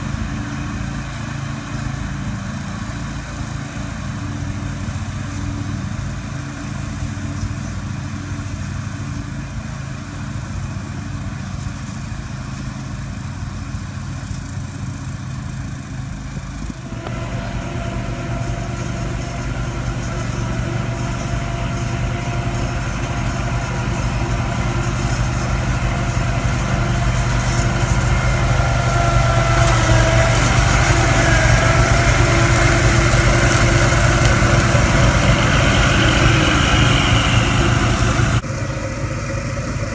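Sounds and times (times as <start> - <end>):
brush mower engine drone: 0.0 - 39.9.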